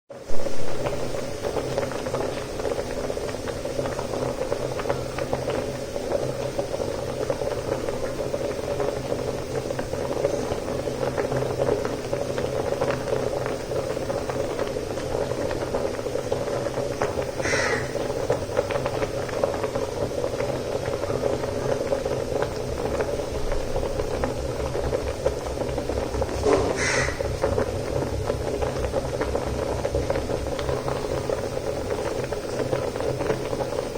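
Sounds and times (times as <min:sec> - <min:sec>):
rice bubbling in a pot: 0:00.1 - 0:33.9
bird calling: 0:17.3 - 0:18.2, 0:26.4 - 0:27.3.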